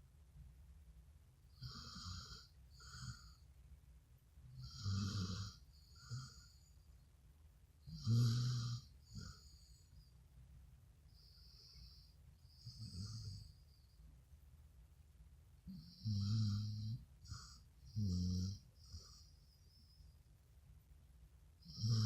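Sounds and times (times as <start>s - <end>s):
dog snoring: 1.5s - 3.4s, 4.6s - 6.7s, 7.8s - 9.8s, 11.2s - 13.6s, 15.7s - 19.9s, 21.6s - 22.0s.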